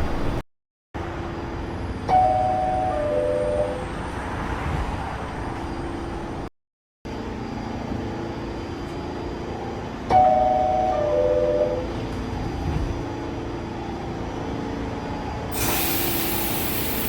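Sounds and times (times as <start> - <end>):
subway car hum and rumble: 0.0 - 0.4, 1.0 - 6.5, 7.1 - 17.0.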